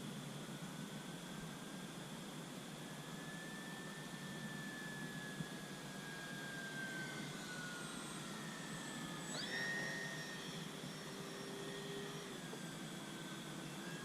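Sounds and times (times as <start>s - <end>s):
model plane motor whining: 3.3s - 14.0s.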